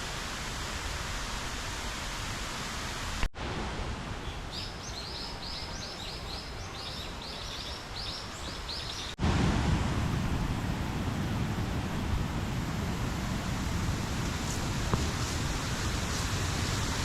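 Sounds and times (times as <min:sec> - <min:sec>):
river water rushing: 0:00.0 - 0:17.0.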